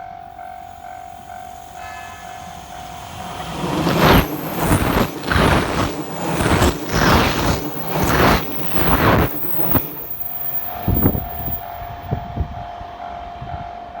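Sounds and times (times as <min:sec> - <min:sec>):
steady high tone: 0:00.0 - 0:12.1
train wheels rumbling past: 0:00.0 - 0:13.9.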